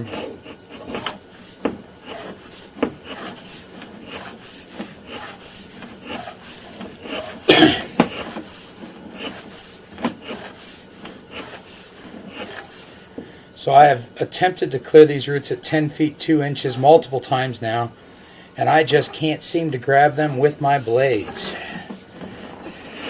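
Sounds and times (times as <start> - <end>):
cable scraping in a drain: 0.0 - 7.5, 8.1 - 12.9, 21.0 - 23.0.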